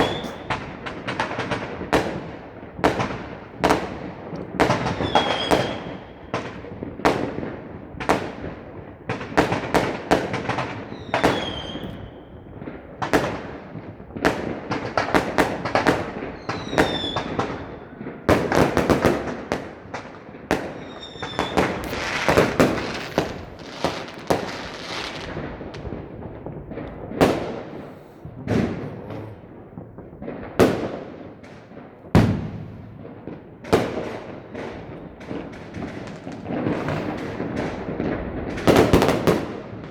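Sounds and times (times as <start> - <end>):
falling firework whistles: 0.0 - 0.7, 4.9 - 6.2, 10.9 - 12.2, 16.4 - 17.4, 20.7 - 26.0
fireworks banging and crackling: 0.0 - 39.9.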